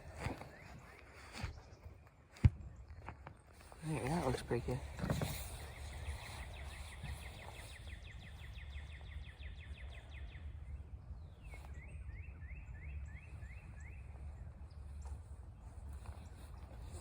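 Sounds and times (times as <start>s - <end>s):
bird singing chirps: 5.6s - 15.2s.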